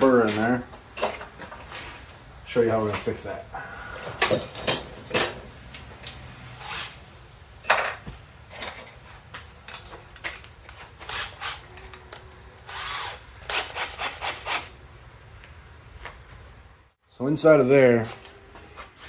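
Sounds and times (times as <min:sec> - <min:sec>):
tools scraping metal: 0:03.9 - 0:05.5, 0:09.7 - 0:14.8.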